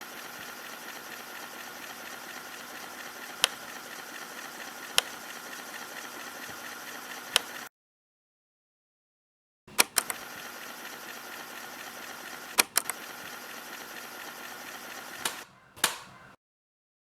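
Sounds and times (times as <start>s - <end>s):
sharp clicks: 3.2s - 3.9s, 4.9s - 5.2s, 7.3s - 7.6s, 9.7s - 10.3s, 12.5s - 13.2s, 14.9s - 16.3s.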